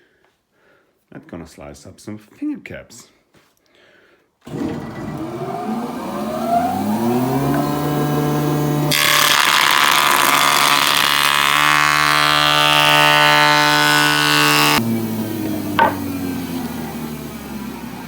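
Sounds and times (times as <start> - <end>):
electric planer motor humming: 4.5 - 18.0
planer blades shaving wood: 4.5 - 18.0.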